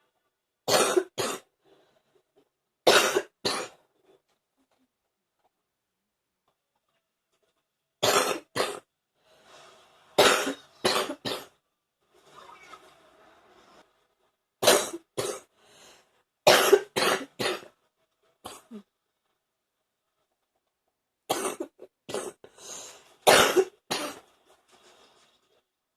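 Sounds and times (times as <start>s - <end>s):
soft breathing: 9.1s - 10.2s, 15.5s - 16.4s, 22.4s - 23.2s.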